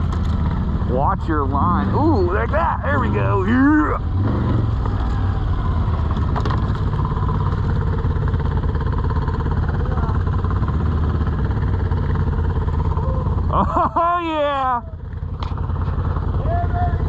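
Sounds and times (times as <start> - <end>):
quad engine running: 0.0 - 17.0.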